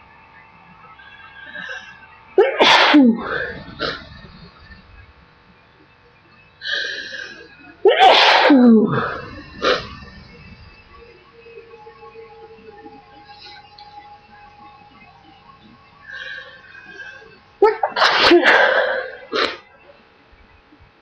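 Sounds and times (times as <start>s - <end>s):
woman sneezing: 2.4s - 3.4s, 7.9s - 9.0s, 17.6s - 19.6s.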